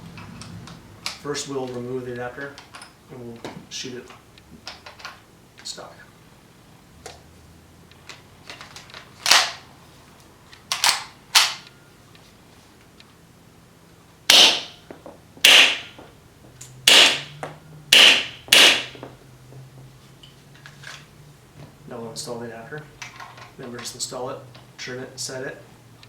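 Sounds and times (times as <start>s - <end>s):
airsoft gun shots: 14.3s - 14.8s, 15.4s - 16.0s, 16.9s - 17.3s, 17.9s - 19.0s.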